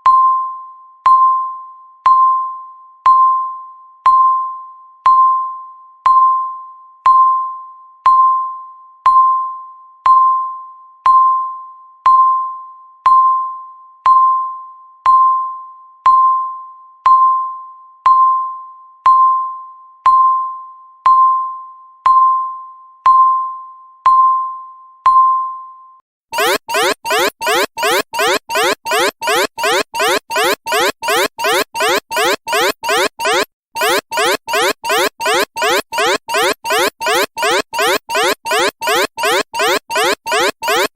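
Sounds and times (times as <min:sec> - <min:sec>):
electronic timer pings: 0:26.4 - 0:40.9
rising electronic alarm sweep: 0:26.4 - 0:40.9.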